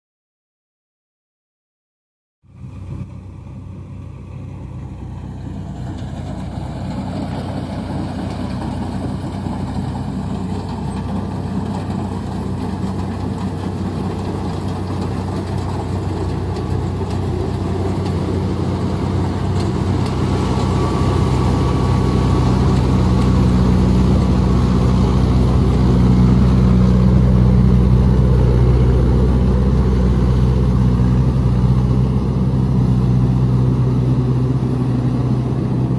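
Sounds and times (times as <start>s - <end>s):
thresher engine running: 4.4s - 35.9s.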